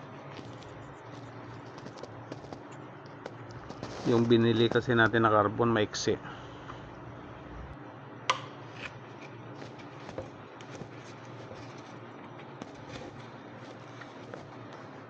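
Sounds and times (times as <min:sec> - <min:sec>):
faint low hum: 0:00.0 - 0:15.0
parts being handled: 0:08.3 - 0:15.0.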